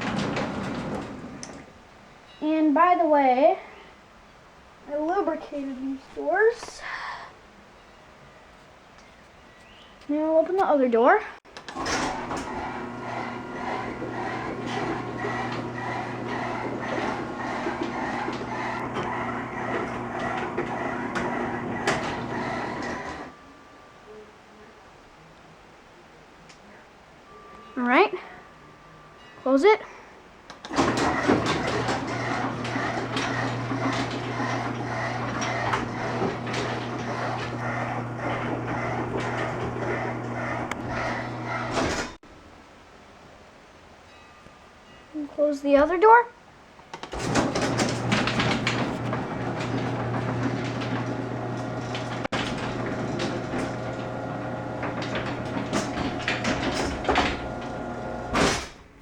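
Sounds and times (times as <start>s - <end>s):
door clattering along track: 0.0s - 1.8s, 11.5s - 23.3s, 30.5s - 42.2s, 47.0s - 59.0s
garage door opener motor hum: 0.0s - 1.8s, 11.6s - 23.3s, 30.6s - 42.2s, 47.0s - 59.0s.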